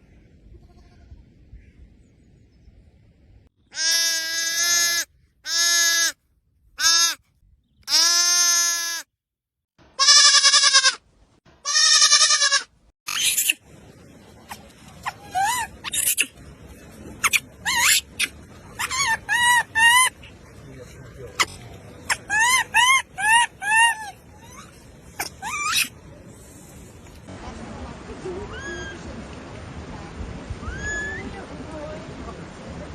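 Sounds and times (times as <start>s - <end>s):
goat kid bleating: 0.5s - 1.2s, 3.7s - 6.2s, 6.8s - 7.2s, 7.9s - 9.1s, 10.0s - 11.0s, 11.6s - 12.7s.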